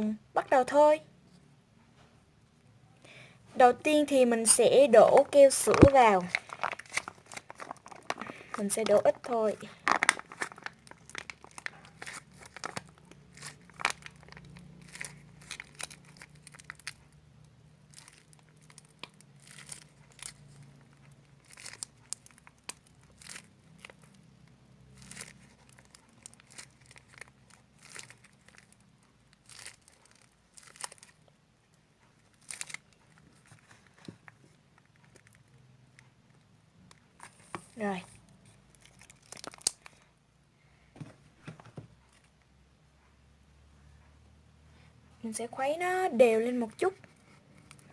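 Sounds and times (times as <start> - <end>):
plastic bottle crinkling and clicking: 4.4 - 17.0, 21.4 - 24.1, 25.0 - 31.2, 32.3 - 34.4, 38.7 - 40.0.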